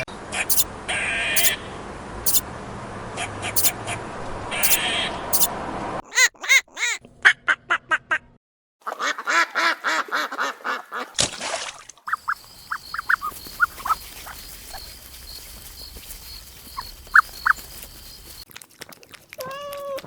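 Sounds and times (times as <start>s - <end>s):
ducks quacking: 0.0s - 0.7s, 1.3s - 1.6s, 3.2s - 4.0s, 4.6s - 5.5s, 8.9s - 11.1s, 12.1s - 18.4s.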